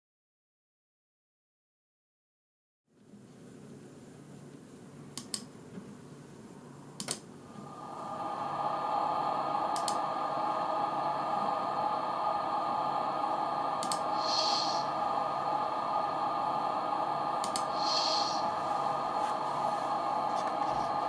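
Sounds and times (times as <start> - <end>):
steady electronic hum: 3.5 - 21.0
short air hisses: 13.8 - 16.3, 16.9 - 21.0.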